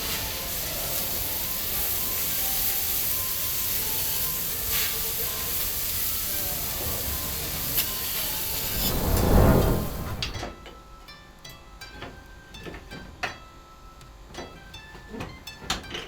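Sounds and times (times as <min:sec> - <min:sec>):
food sizzling on a griddle: 0:00.0 - 0:08.9
low rumble: 0:08.5 - 0:10.5.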